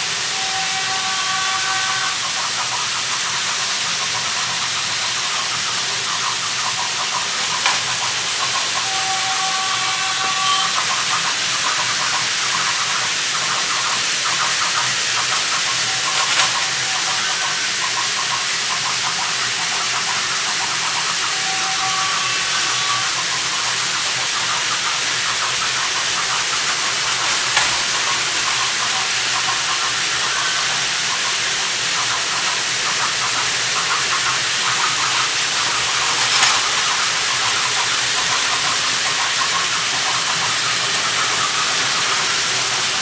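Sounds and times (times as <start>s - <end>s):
steam whistle chord: 0.0s - 2.6s, 7.0s - 12.6s, 15.5s - 18.0s, 21.1s - 23.8s
steam train hiss: 0.0s - 43.0s
faint rattling clicks: 6.6s - 11.8s, 25.4s - 29.6s, 34.6s - 41.5s.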